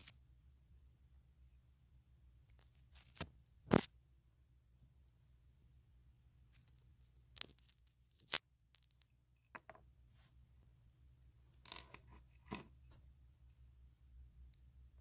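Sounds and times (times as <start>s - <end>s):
low steady hum: 0.0s - 15.0s
sharp clicks and crackles: 6.5s - 9.2s.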